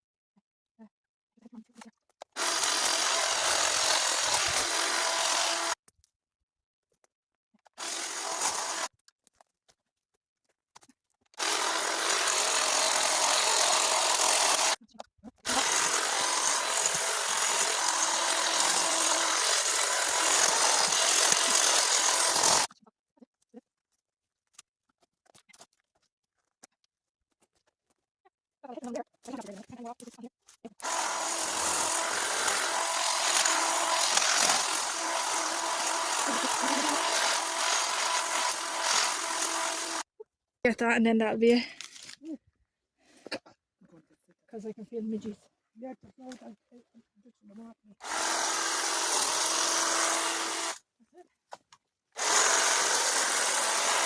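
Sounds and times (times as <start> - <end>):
power tool cutting wood: 2.4 - 5.8, 7.8 - 8.9, 11.4 - 14.8, 15.4 - 22.7, 30.8 - 40.1, 48.0 - 50.8, 52.2 - 54.0.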